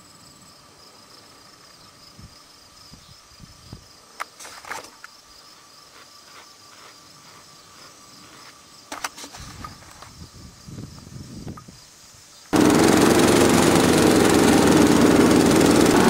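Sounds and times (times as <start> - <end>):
crickets trilling: 0.0 - 12.6.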